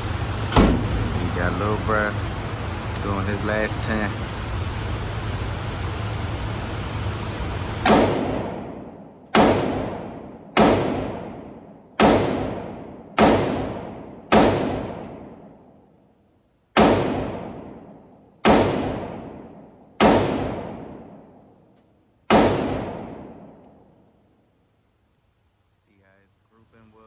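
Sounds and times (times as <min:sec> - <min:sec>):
rifle shots with echo: 0:07.8 - 0:15.6, 0:16.8 - 0:21.5, 0:22.3 - 0:24.0.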